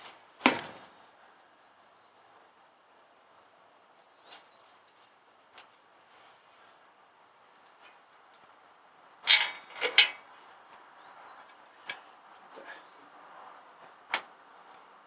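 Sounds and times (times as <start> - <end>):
metal clanks: 9.3 - 10.3.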